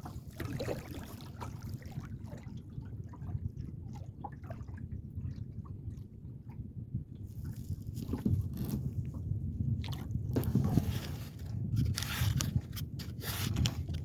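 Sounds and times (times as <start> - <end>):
light splashes on hull: 0.0 - 6.6
low steady rumble: 0.0 - 14.0.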